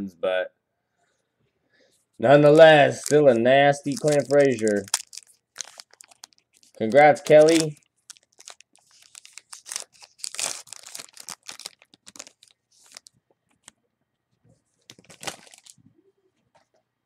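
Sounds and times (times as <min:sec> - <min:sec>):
card packaging crinkling: 0:02.5 - 0:13.7, 0:14.9 - 0:15.8.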